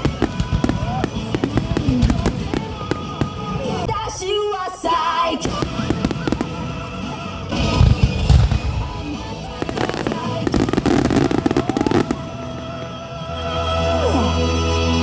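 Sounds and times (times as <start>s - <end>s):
firework booms: 0.0s - 4.3s, 5.4s - 13.0s
firework crackling: 0.0s - 13.7s
music playing: 0.0s - 15.0s.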